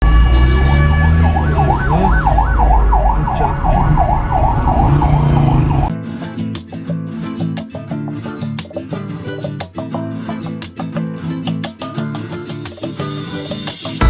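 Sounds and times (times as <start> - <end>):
low rumble: 0.0 - 5.9
siren sweeping up and down: 0.0 - 5.9
plucked string music: 5.9 - 14.0.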